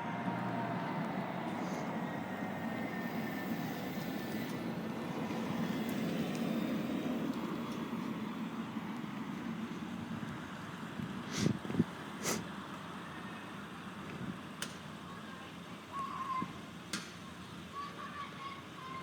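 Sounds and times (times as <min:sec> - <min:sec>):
vehicle engine and tyre noise: 0:00.0 - 0:15.0.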